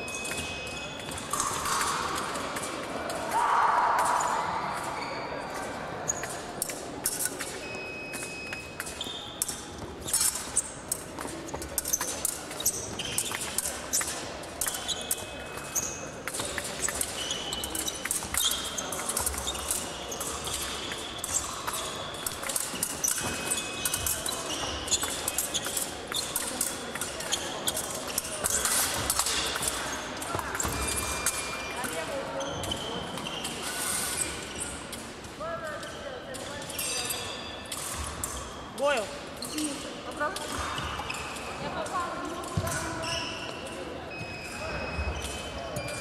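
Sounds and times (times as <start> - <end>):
fencing blades clicking and clashing: 0.0 - 3.4, 4.0 - 46.0.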